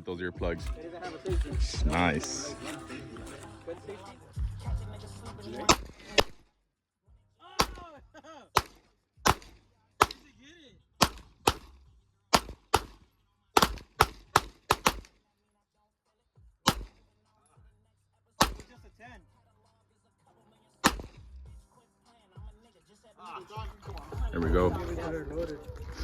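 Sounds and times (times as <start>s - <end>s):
gunshots: 5.7s - 6.4s, 7.6s - 7.9s, 8.6s - 10.4s, 11.0s - 13.0s, 13.6s - 15.1s, 16.6s - 17.0s, 18.4s - 18.8s, 20.8s - 21.2s.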